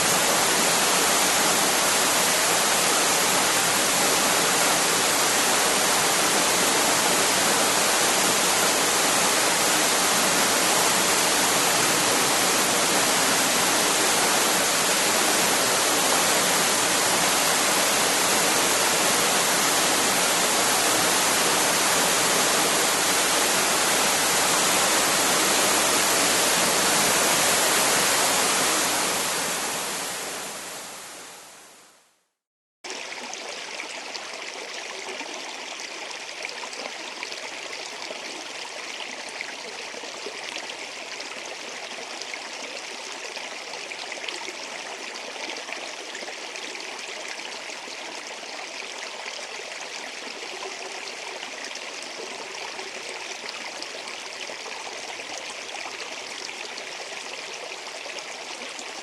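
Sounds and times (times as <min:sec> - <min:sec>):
waterfall rushing: 0:00.0 - 0:31.7.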